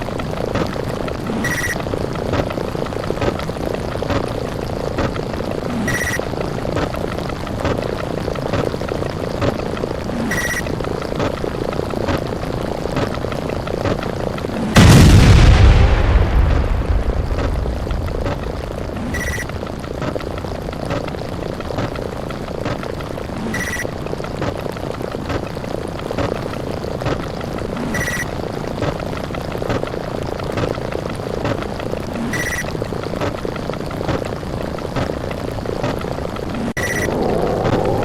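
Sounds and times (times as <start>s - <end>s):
dense rumble of sound effects: 14.8s - 20.7s, 36.4s - 38.0s
short high beep: 36.8s - 37.1s.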